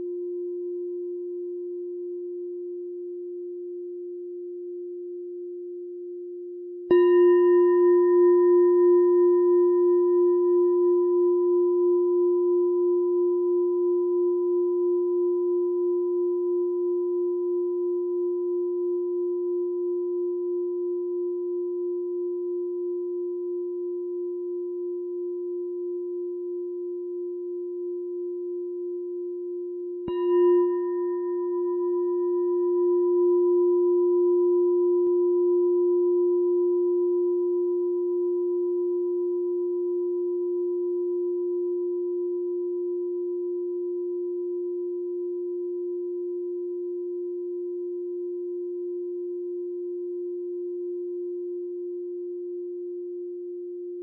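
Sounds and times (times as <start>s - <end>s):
meditation bell ringing: 6.9s - 19.2s, 24.5s - 49.4s.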